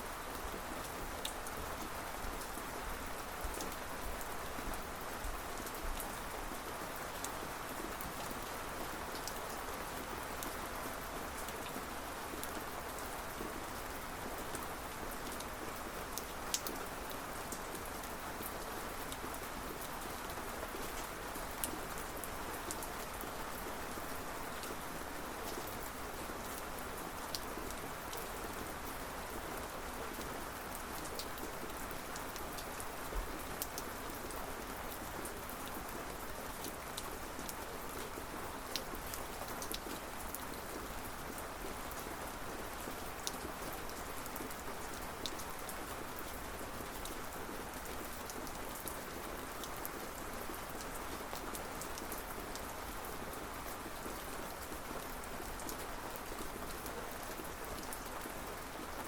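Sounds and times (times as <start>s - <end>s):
rain falling: 0.0s - 59.0s
raindrops ticking on a surface: 0.5s - 13.5s, 14.3s - 19.9s, 25.4s - 59.0s.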